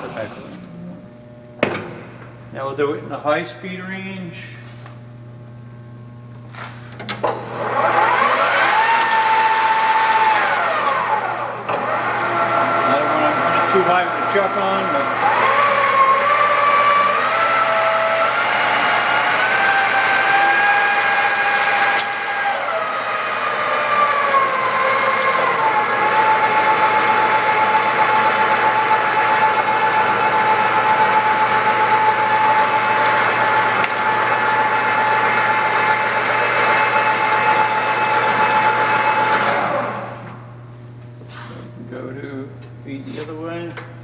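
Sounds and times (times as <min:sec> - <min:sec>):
metal lathe whining: 0:00.0 - 0:01.0, 0:07.2 - 0:40.4.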